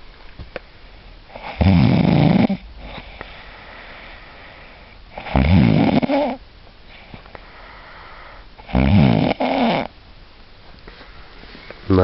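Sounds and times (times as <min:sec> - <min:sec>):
person snoring loudly: 0:01.4 - 0:03.0, 0:05.2 - 0:06.4, 0:08.6 - 0:09.9.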